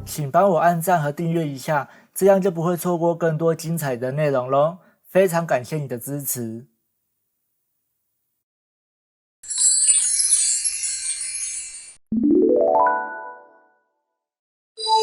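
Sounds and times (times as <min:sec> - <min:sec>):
glittering chime twinkle: 0:09.4 - 0:13.7, 0:14.8 - 0:15.0.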